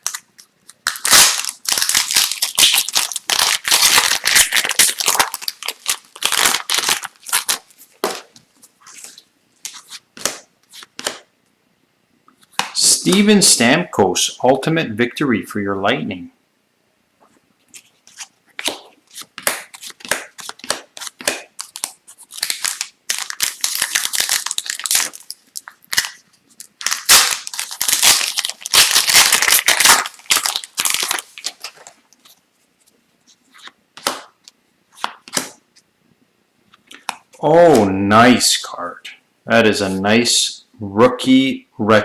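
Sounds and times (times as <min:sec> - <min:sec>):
foil wrapper tearing and crinkling: 0:00.0 - 0:08.3, 0:18.1 - 0:32.0.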